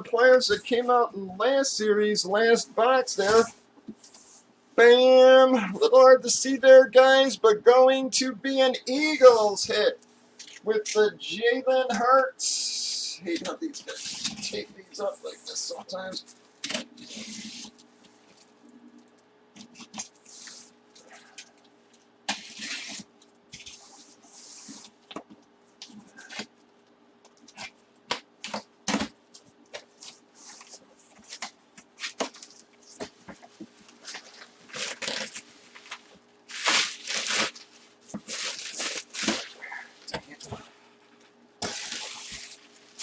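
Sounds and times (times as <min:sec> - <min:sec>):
tape tearing: 0:22.3 - 0:24.9, 0:34.0 - 0:39.6, 0:41.6 - 0:43.0
packaging rustling: 0:28.4 - 0:40.0, 0:41.6 - 0:43.0.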